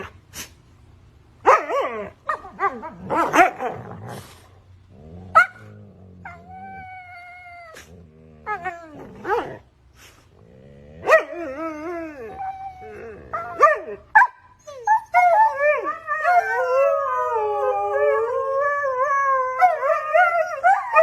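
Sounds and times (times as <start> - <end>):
husky yowling and howling: 6.2 - 9.6, 10.9 - 21.0.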